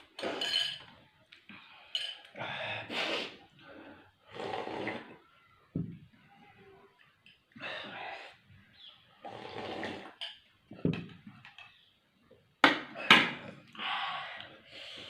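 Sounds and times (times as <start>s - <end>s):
person breathing hard and sniffing: 2.4s - 4.8s.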